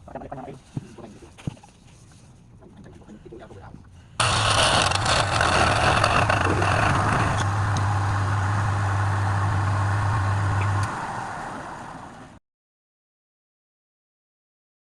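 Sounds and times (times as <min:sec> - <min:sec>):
lathe spinning rush: 0:04.2 - 0:12.4
wood lathe motor hum: 0:04.2 - 0:12.4.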